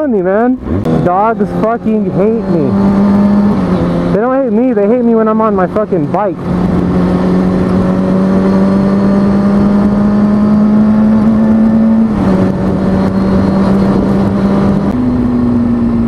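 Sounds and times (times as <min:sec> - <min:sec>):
motorcycle engine running: 0:00.0 - 0:16.0
wind rush: 0:05.4 - 0:16.0.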